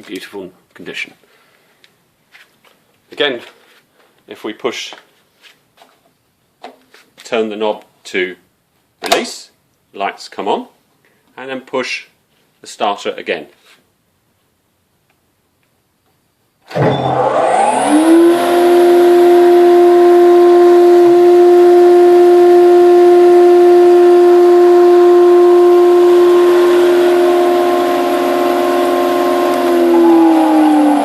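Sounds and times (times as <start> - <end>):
planer motor whining: 16.7 - 31.0.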